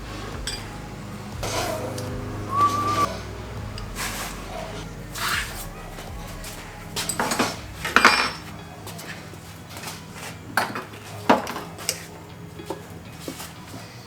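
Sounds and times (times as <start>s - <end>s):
metal tools clinking: 3.8s - 14.0s.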